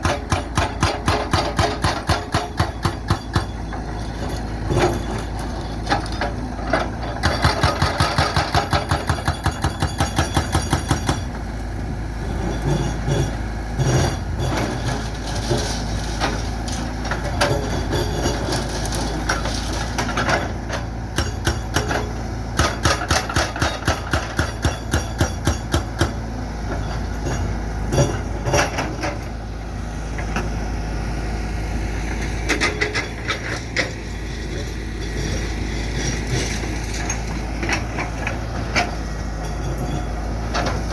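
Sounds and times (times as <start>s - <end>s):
hydraulic breaker hammering concrete: 0.0s - 3.6s, 7.2s - 11.3s, 21.1s - 26.2s
diesel engine running: 0.0s - 40.9s.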